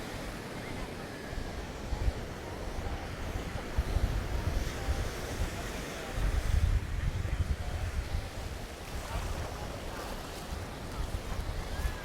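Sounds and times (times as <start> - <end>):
ocean surf: 0.0 - 12.0
wind buffeting microphone: 0.0 - 12.0.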